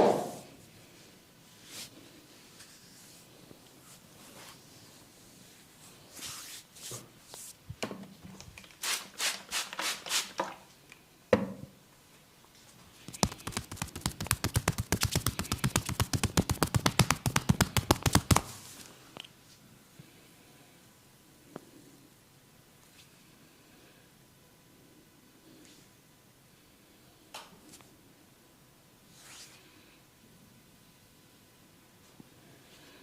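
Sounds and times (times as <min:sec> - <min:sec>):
hands rubbing and slapping body: 0:13.0 - 0:18.9
fast percussive hand taps: 0:13.1 - 0:18.5.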